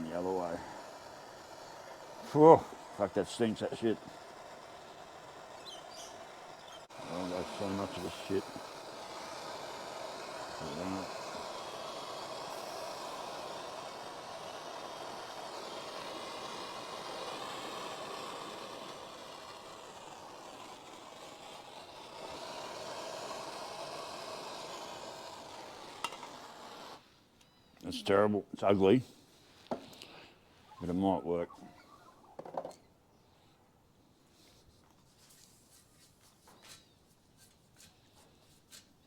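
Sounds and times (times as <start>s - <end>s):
gas torch flame burning: 0.0s - 27.1s.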